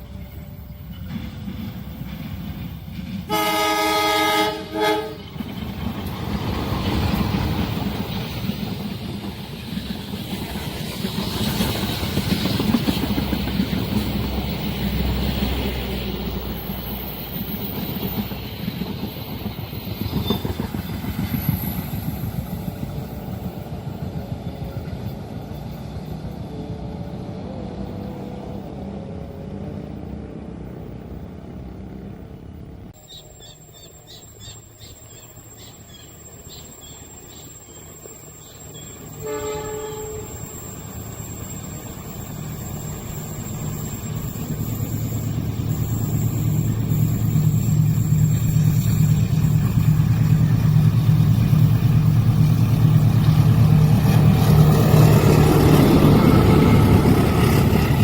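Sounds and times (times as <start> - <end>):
low rumble of train: 0.0 - 58.0
train passing at speed: 0.0 - 58.0.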